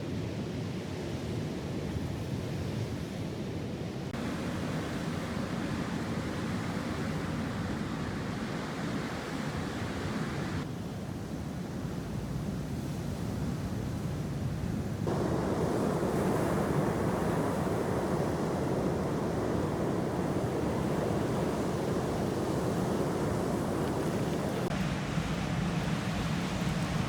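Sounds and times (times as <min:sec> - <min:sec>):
wind: 0:00.0 - 0:27.0
sea waves: 0:04.1 - 0:10.6, 0:15.0 - 0:27.0
rushing noise: 0:15.1 - 0:21.3.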